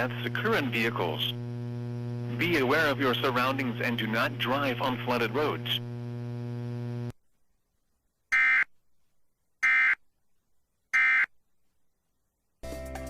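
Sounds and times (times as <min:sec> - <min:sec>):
electrical hum: 0:00.0 - 0:07.2.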